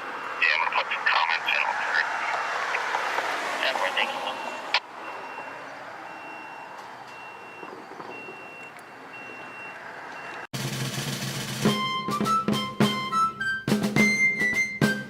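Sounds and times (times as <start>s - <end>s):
reversing alarm beeping: 3.9s - 10.5s.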